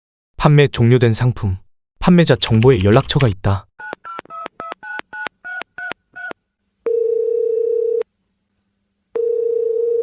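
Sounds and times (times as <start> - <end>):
phone keypad dialling tones: 3.8 - 8.0, 9.2 - 10.0
phone line ringing tone: 6.9 - 8.0, 9.2 - 10.0.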